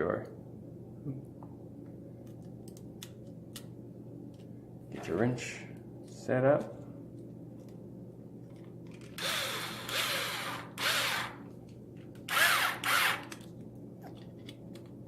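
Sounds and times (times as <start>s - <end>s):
power driver whirring: 9.1s - 11.5s, 12.2s - 13.4s.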